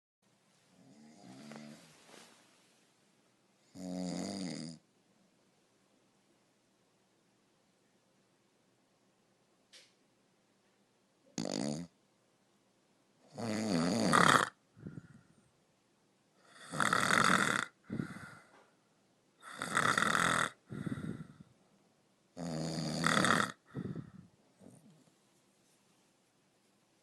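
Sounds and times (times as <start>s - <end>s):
person snoring: 0.8s - 1.9s, 3.7s - 4.8s, 11.4s - 11.9s, 13.3s - 15.2s, 16.4s - 18.6s, 19.4s - 21.5s, 22.4s - 24.8s
soft breath out: 1.3s - 2.7s, 14.7s - 15.5s, 17.8s - 18.8s, 20.6s - 21.6s, 23.6s - 25.1s.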